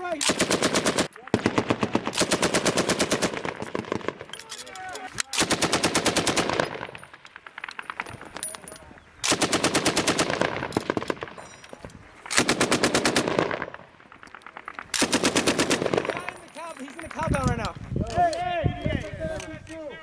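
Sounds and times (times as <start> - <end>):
machine-gun fire: 0.0 - 4.3, 5.4 - 8.2, 9.3 - 11.4, 12.3 - 16.5
scattered gunshots: 0.0 - 4.4, 12.3 - 17.2.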